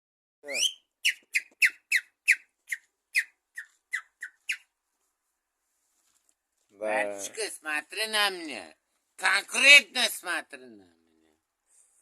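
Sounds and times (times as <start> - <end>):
rising whistle-like call: 0.4 - 4.6.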